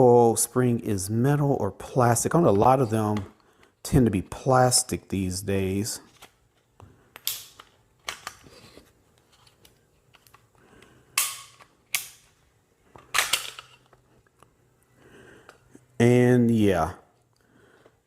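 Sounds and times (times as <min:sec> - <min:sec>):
pistol parts clicking and clacking: 0:07.1 - 0:08.5, 0:11.1 - 0:14.0.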